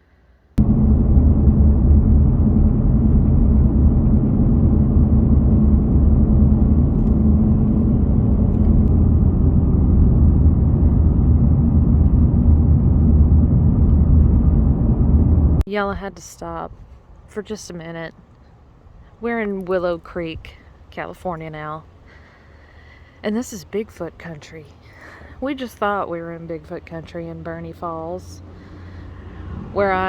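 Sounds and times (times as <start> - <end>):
car engine and road rumble: 0.6 - 15.7, 27.2 - 30.0.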